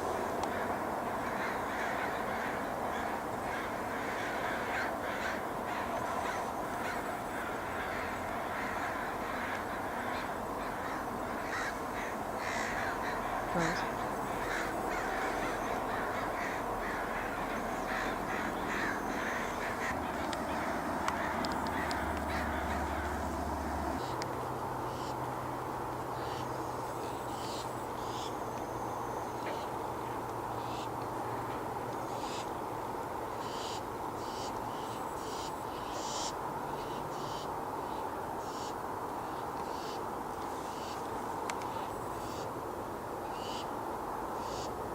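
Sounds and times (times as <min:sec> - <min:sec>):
steady background hiss: 0:00.0 - 0:44.9
birds harsh calls: 0:01.2 - 0:24.2.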